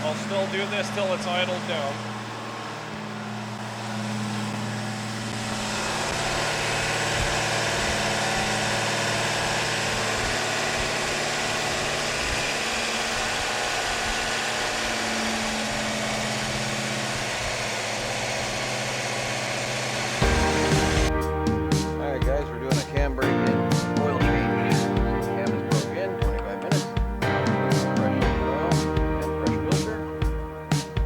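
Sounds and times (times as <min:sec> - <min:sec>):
engine running steadily: 0:00.0 - 0:31.0.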